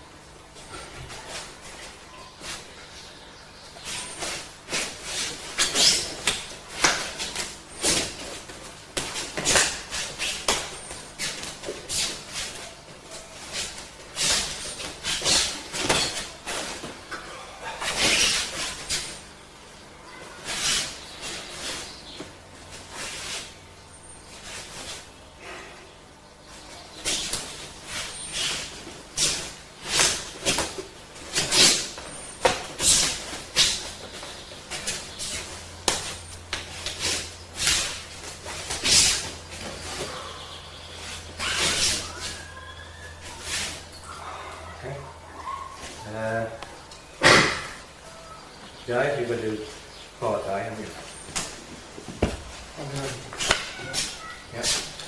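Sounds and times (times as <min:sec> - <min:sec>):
swishes and scuffs of movement: 0:03.8 - 0:17.1, 0:20.2 - 0:25.1, 0:26.5 - 0:44.2, 0:50.9 - 0:55.0
swishes of arms: 0:27.0 - 0:40.1
sharp slaps of strikes: 0:47.2 - 0:47.8, 0:53.3 - 0:54.2.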